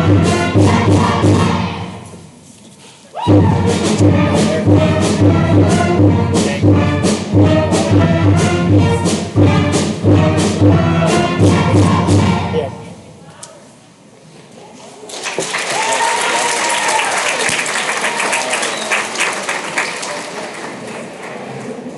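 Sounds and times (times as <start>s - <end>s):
upbeat music with brass: 0.0s - 1.9s, 3.3s - 12.6s.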